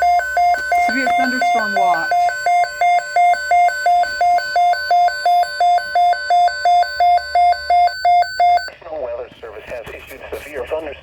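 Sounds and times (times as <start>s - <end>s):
alternating electronic alarm tone: 0.0s - 8.7s.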